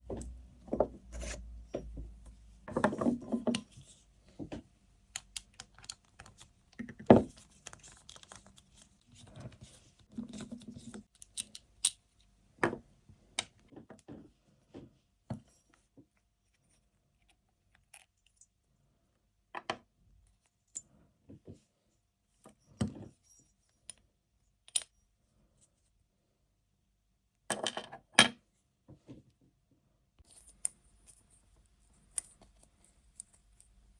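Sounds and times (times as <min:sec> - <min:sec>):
metal parts and tools clicking: 0:07.2 - 0:12.1.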